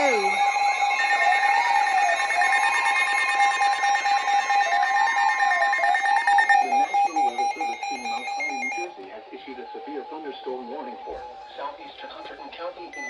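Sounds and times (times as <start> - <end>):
rapid beeps: 0.0 - 8.9, 10.0 - 13.0
warbling tone gliding up and down: 0.0 - 8.9
steady electronic alarm tone: 0.0 - 13.0.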